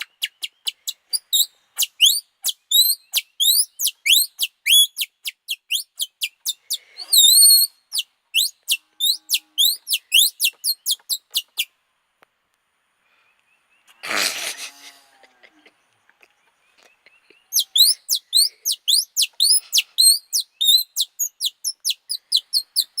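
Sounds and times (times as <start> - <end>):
songbird whistling high notes: 7.0 - 7.7.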